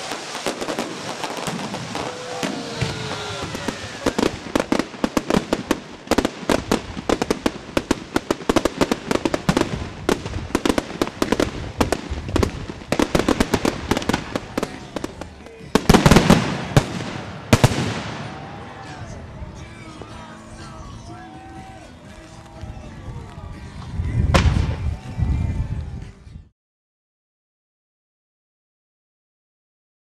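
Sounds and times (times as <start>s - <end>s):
fireworks crackling bangs: 0.0s - 18.5s, 24.2s - 25.0s
large firework bursts: 0.0s - 18.5s.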